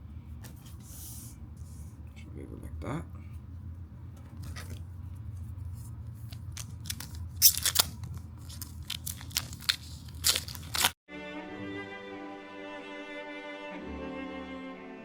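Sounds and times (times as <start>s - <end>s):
steady low hum: 0.0s - 8.9s
foil pack crinkling and snipping: 6.2s - 11.0s.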